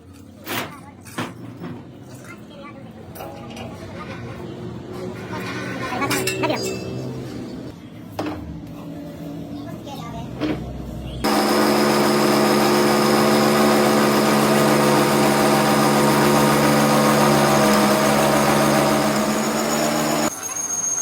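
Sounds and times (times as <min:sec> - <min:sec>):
workshop machine humming: 0:11.2 - 0:20.3.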